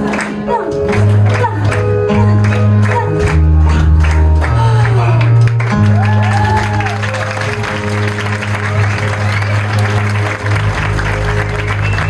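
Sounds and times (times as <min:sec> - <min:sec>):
music with steady beat and bass: 0:00.0 - 0:12.0.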